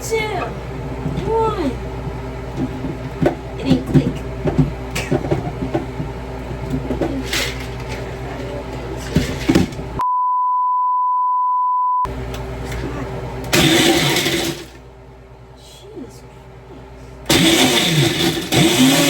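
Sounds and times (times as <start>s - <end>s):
blender grinding ice: 0.8s - 10.0s, 13.5s - 14.8s, 17.3s - 19.0s
censor bleep: 10.0s - 12.1s.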